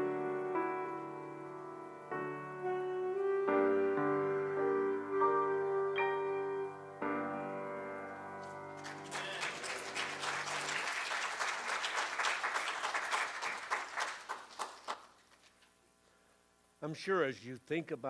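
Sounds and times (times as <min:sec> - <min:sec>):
piano chord ringing: 0:00.0 - 0:08.8
audience applauding: 0:08.8 - 0:15.3.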